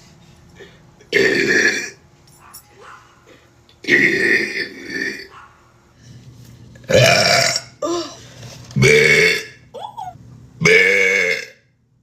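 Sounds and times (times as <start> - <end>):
woman burping: 1.0 - 2.0, 6.9 - 8.2.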